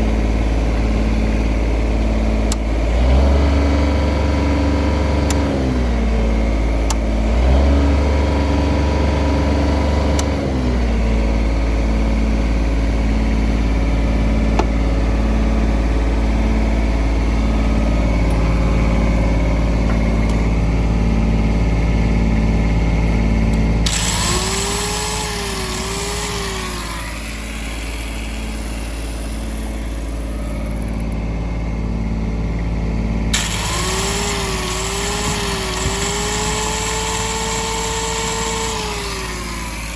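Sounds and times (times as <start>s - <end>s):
diesel generator engine running: 0.0s - 39.9s
wavering whine: 23.8s - 31.2s, 33.3s - 39.9s.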